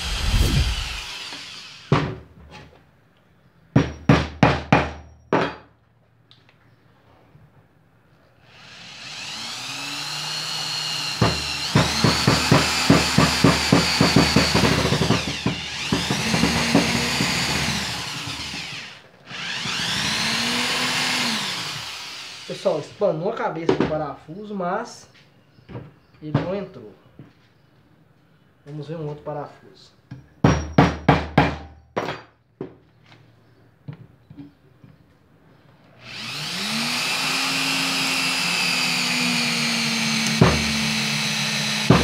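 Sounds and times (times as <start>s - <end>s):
drill motor whining: 0.0s - 2.1s, 8.5s - 22.9s, 36.0s - 42.0s.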